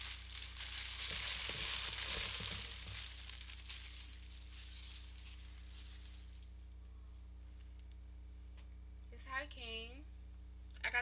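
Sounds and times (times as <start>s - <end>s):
packaging wrap crinkling: 0.0s - 6.8s.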